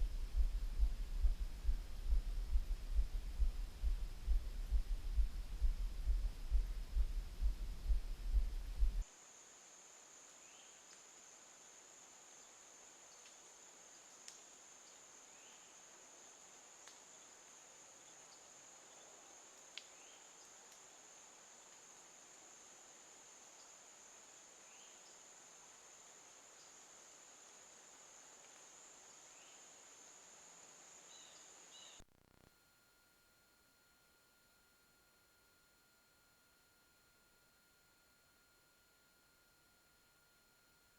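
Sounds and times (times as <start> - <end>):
loud low rumbling: 0.0 - 9.0
insects droning: 0.0 - 40.9.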